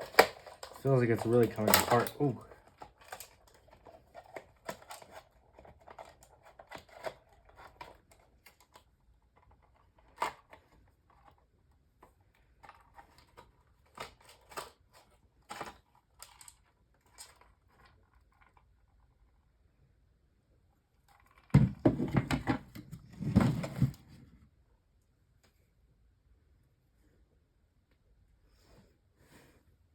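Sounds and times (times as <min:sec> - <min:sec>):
plastic clicks and rattles: 0:00.0 - 0:11.4, 0:12.6 - 0:18.7.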